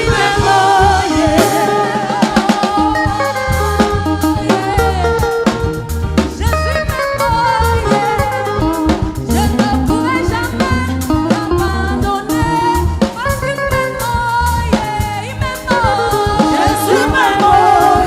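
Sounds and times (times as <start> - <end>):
gospel singing: 0.0 - 5.9, 9.9 - 13.2, 14.7 - 18.0
band with drum beat and bass: 0.0 - 18.0.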